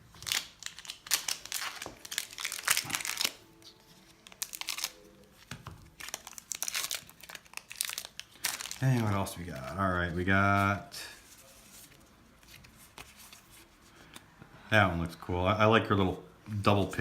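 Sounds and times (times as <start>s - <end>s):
foil wrapper crinkling and tearing: 0.0s - 9.8s.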